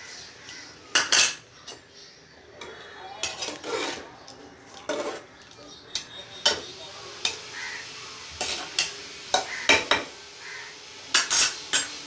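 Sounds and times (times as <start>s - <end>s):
spoon scraping a pot: 2.6s - 4.2s, 4.8s - 7.4s, 8.4s - 9.9s, 11.1s - 12.0s
simmering hiss: 6.2s - 12.0s.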